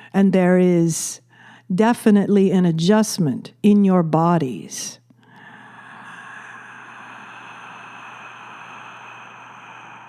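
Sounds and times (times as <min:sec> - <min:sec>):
woman exhaling breathily: 0:05.3 - 0:10.0.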